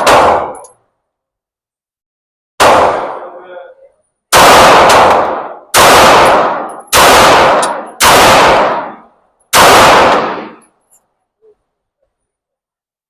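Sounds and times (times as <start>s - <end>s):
pistol shots with ringing echo: 0.0s - 0.8s, 2.6s - 3.7s, 4.3s - 10.8s.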